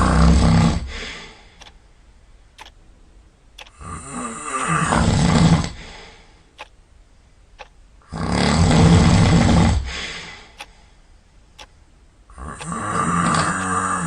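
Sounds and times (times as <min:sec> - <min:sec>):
loud snoring: 0:00.0 - 0:00.9, 0:03.8 - 0:05.8, 0:08.0 - 0:09.9, 0:12.3 - 0:14.0
faint ticks: 0:01.6 - 0:01.8, 0:02.6 - 0:02.8, 0:03.5 - 0:03.8, 0:04.6 - 0:04.8, 0:06.6 - 0:06.8, 0:07.6 - 0:07.8, 0:10.5 - 0:10.8, 0:11.6 - 0:11.8, 0:12.5 - 0:13.8.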